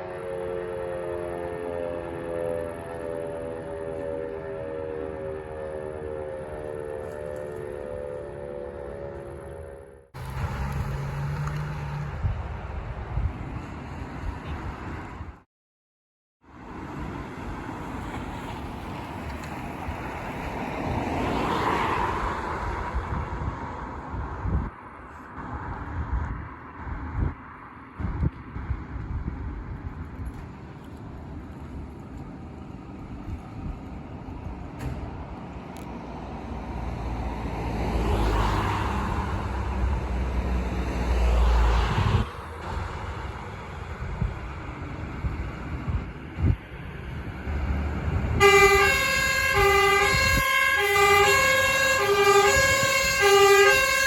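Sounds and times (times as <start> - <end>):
vehicle driving past: 0.2 - 14.8, 30.5 - 54.0
wind buffeting microphone: 11.9 - 15.4, 22.0 - 36.6, 39.0 - 53.9.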